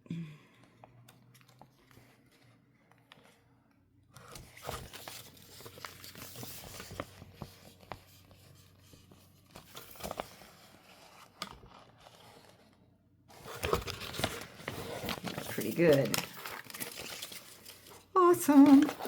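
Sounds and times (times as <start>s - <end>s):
packaging rustling and crinkling: 4.2s - 19.0s.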